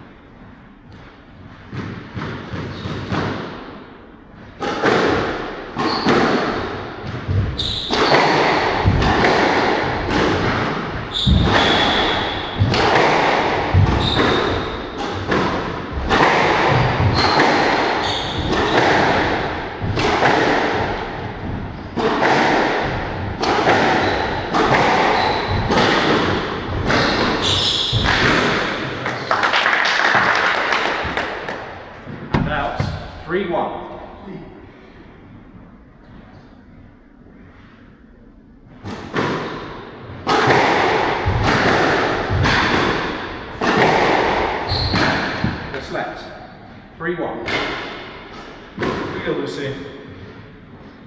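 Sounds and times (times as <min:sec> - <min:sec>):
squash ball hitting rackets and walls: 0:00.0 - 0:33.4, 0:38.7 - 0:51.0
shoes squeaking on court floor: 0:05.8 - 0:06.4, 0:07.1 - 0:08.3, 0:11.1 - 0:12.9, 0:13.8 - 0:15.4, 0:16.8 - 0:19.6, 0:23.7 - 0:28.4, 0:31.0 - 0:33.3, 0:44.7 - 0:45.9.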